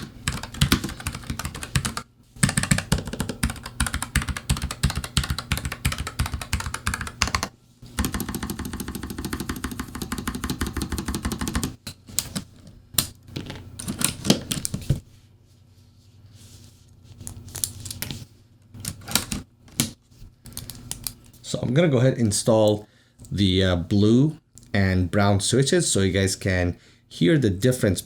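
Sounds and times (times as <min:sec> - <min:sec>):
mechanical keyboard typing: 0:00.0 - 0:11.8.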